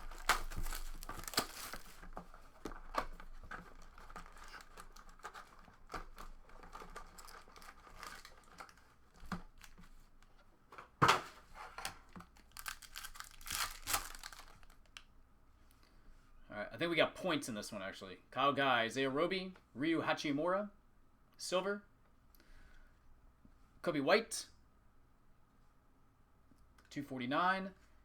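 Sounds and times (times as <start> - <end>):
wrappers tearing and crinkling: 0.0 - 9.9, 11.9 - 15.0.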